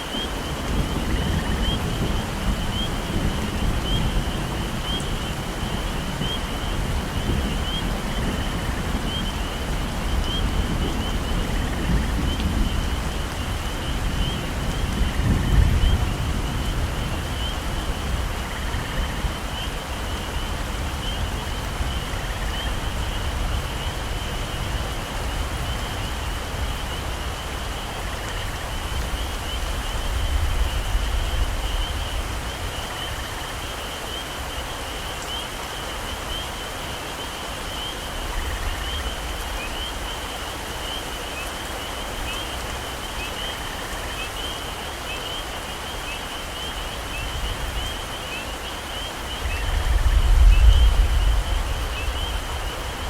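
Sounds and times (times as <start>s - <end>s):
heavy rain on foliage: 0.0s - 53.0s
distant thunder rumbles: 49.4s - 53.0s.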